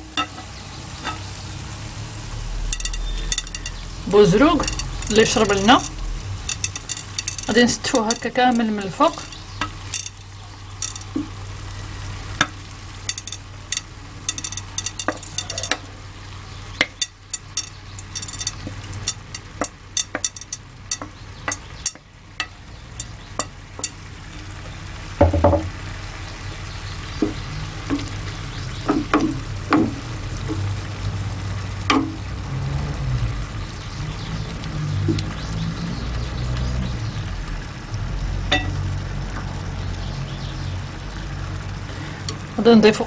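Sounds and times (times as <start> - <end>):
low steady hum: 0.0 - 32.4
faint sizzle: 0.0 - 43.0
utensil clicking and scraping dish: 2.7 - 11.3, 12.4 - 16.0, 16.8 - 24.0.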